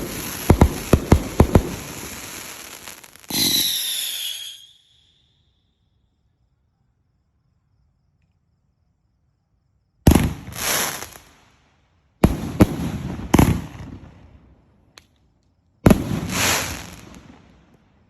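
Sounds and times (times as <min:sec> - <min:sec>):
fireworks bangs: 0:00.0 - 0:04.6, 0:10.1 - 0:11.3, 0:12.2 - 0:14.2, 0:15.9 - 0:17.6.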